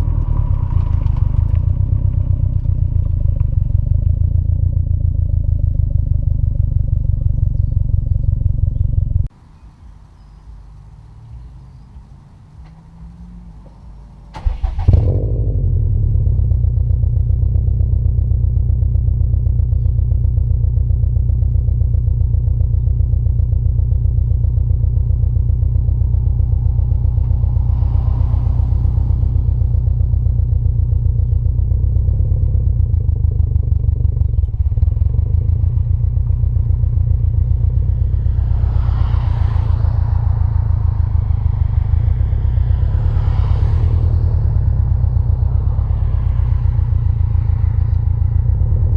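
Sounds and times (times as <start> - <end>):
car engine starting and idling: 0.0 - 48.9.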